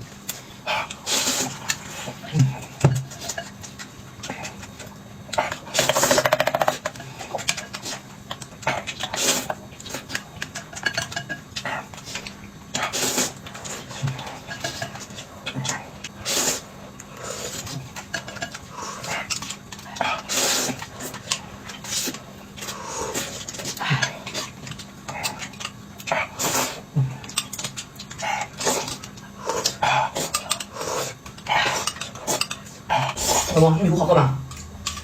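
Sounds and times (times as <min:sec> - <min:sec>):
utensils clinking against dishes: 0:10.0 - 0:12.3, 0:27.2 - 0:33.9.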